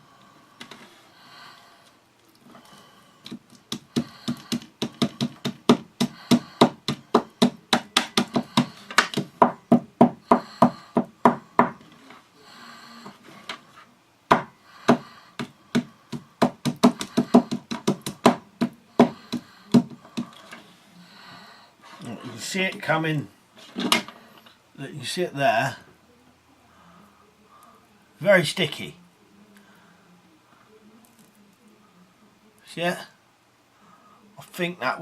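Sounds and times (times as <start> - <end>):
wooden stick pounding berries: 3.2 - 12.0, 14.3 - 20.4.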